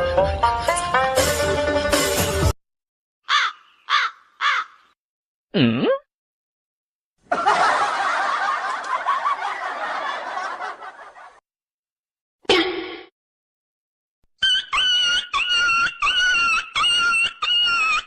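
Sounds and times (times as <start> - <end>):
crow cawing: 3.2 - 5.0
laughter: 7.2 - 11.4.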